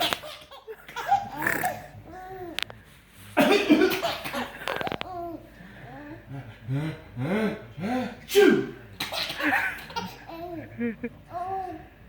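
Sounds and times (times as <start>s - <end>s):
laughter: 10.5s - 11.2s.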